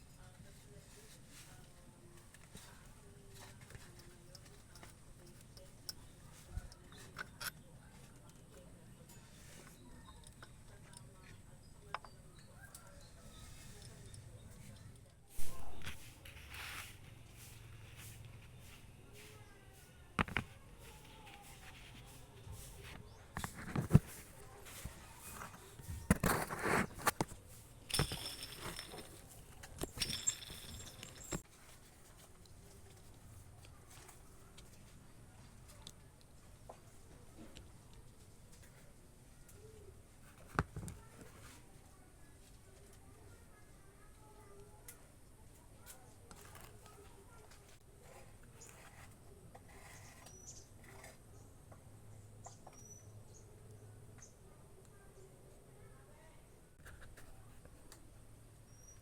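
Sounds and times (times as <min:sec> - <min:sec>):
metal tools clinking and scraping: 0:20.2 - 0:31.4.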